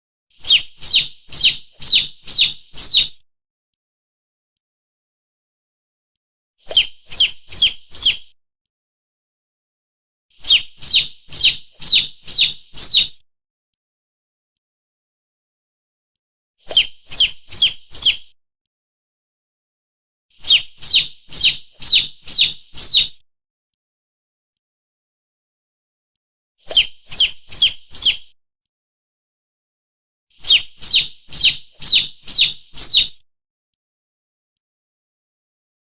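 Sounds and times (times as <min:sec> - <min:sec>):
high-pitched squeaking lure call: 0:00.4 - 0:03.2, 0:06.7 - 0:08.3, 0:10.4 - 0:13.2, 0:16.7 - 0:18.3, 0:20.4 - 0:23.2, 0:26.7 - 0:28.3, 0:30.4 - 0:33.2.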